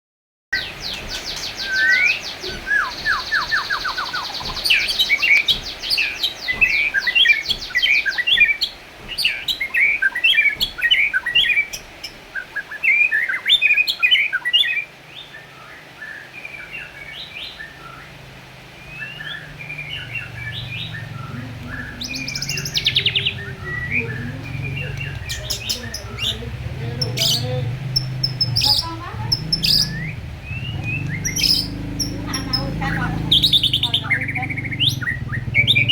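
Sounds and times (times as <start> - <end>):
bird singing trills and whistles: 0.6 - 18.2, 18.8 - 35.9.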